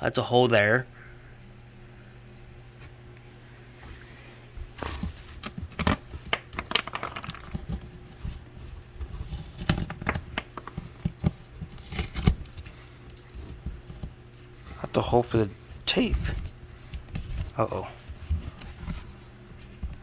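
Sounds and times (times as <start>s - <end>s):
cardboard box rustling and scraping: 3.8s - 19.8s.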